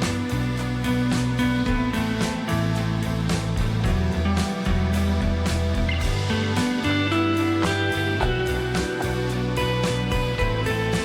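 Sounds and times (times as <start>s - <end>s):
strummed guitar: 0.0s - 11.0s
steady beat: 7.6s - 10.7s.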